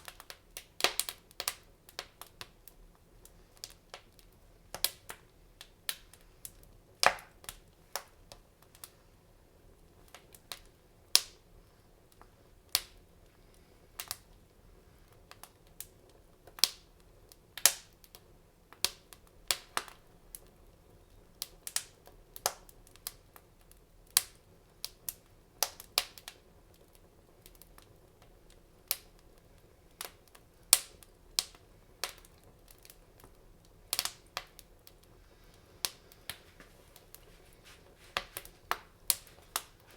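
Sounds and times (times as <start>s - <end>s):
faint steady hiss: 0.0s - 39.9s
wood fire crackling: 0.0s - 39.9s.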